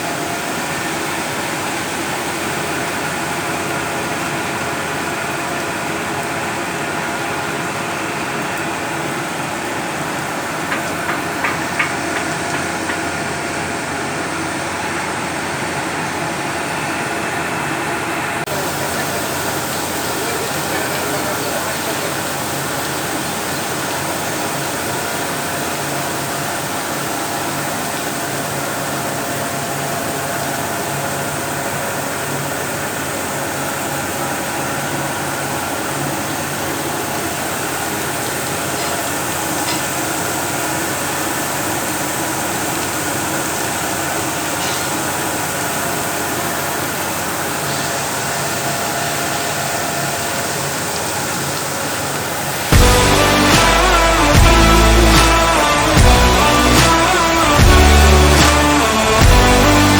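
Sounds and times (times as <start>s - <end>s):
mill machinery rushing: 0.0s - 59.9s
low hum: 52.7s - 59.9s.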